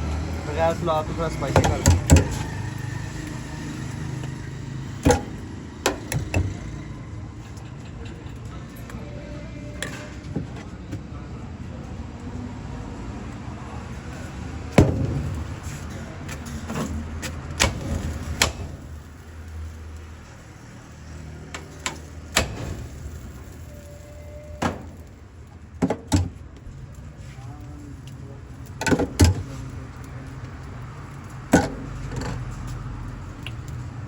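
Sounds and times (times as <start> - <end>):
utensils knocking and clattering: 1.3 - 2.4.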